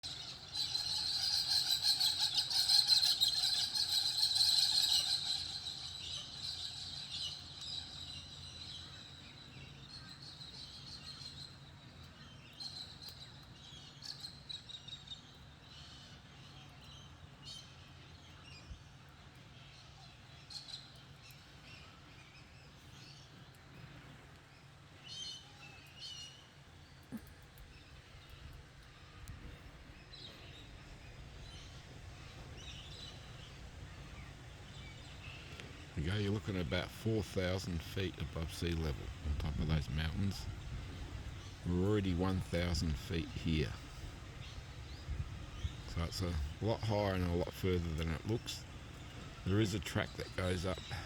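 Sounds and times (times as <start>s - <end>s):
forest birds chattering: 0.0s - 51.0s.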